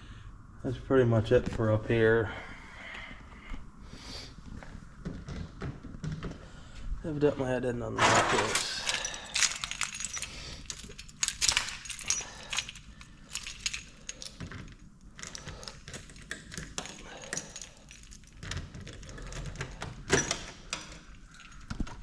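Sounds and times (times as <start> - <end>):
metal rattles: 8.0 - 22.0
keys jangling in lock: 8.3 - 22.0.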